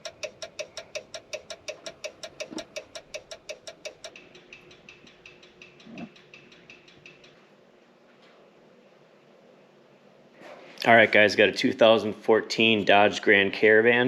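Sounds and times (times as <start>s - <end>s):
turn signal ticking fast: 0.0s - 7.3s.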